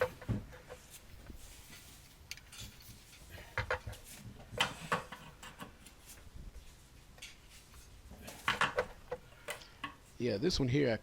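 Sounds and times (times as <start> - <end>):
metal tools clicking and scraping: 1.7 - 3.9.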